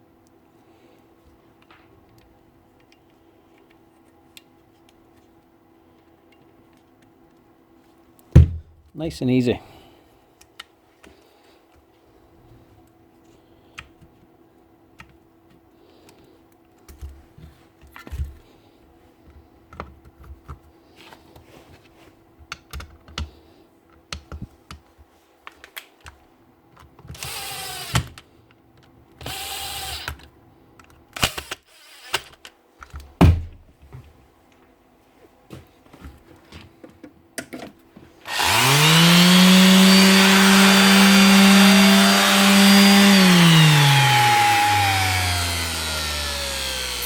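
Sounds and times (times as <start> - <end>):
small electric tool motor spinning up: 27.2 - 28.1, 29.2 - 30.2, 31.2 - 32.4, 38.2 - 47.0.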